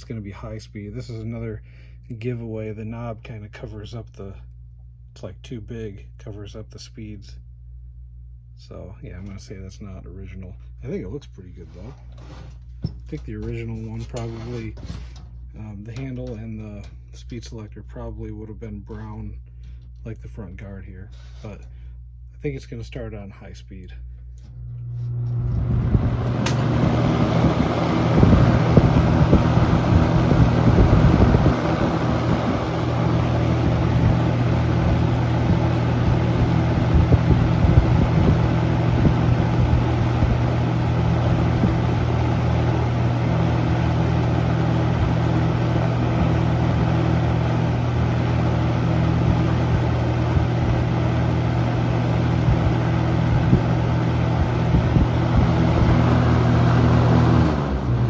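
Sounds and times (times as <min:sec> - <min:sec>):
box fan running: 0:00.0 - 0:58.0
fan switch click: 0:25.3 - 0:27.7.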